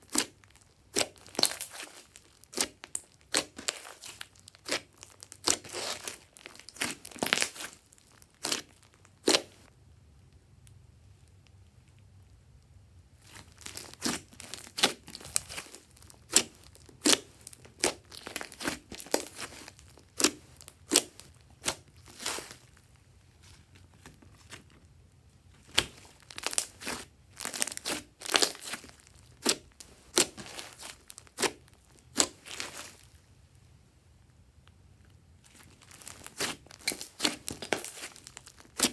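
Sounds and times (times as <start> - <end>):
slime squished by hand: 0.0 - 9.7, 13.2 - 22.8, 25.6 - 33.2, 35.4 - 38.9.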